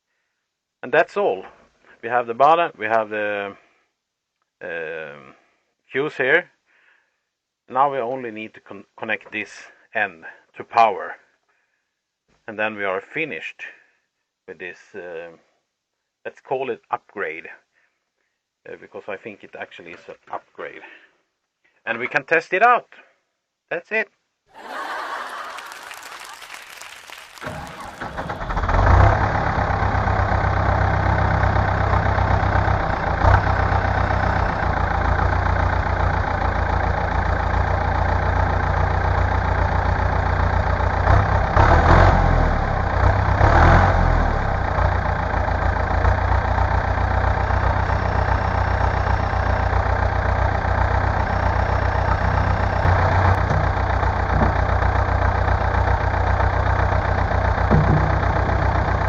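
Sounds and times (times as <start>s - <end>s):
tractor diesel engine idling: 27.4s - 59.0s.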